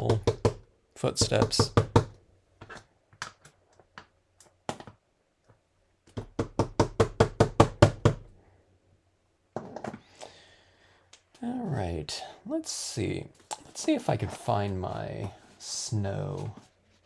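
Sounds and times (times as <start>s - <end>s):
rubber stamp tapping on surface: 0.0s - 0.6s, 1.2s - 2.2s.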